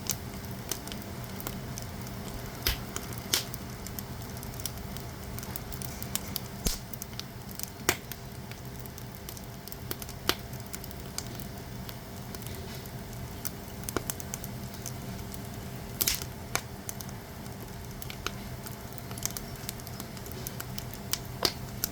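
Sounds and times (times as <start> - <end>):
fire crackles and pops: 0.0 - 21.9
firewood burning with rumble: 0.0 - 21.9.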